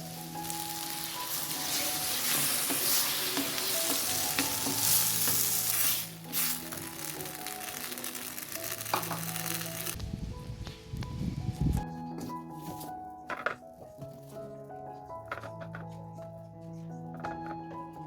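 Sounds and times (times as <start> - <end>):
food sizzling in frying: 0.0 - 10.1
background music melody: 0.0 - 18.0.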